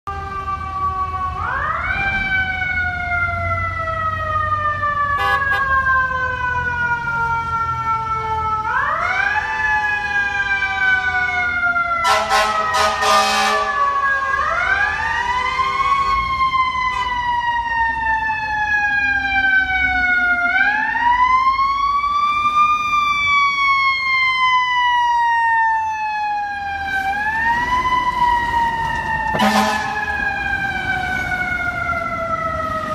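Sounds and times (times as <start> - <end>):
fire engine siren wailing: 0.0 - 32.9
short siren blasts: 4.9 - 11.2, 11.9 - 18.0, 24.8 - 32.9.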